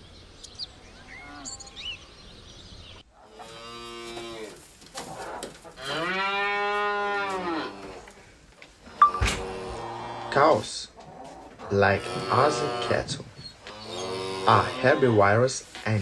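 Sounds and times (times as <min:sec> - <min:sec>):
cow mooing: 0:05.8 - 0:08.0, 0:08.9 - 0:10.5, 0:11.8 - 0:15.3.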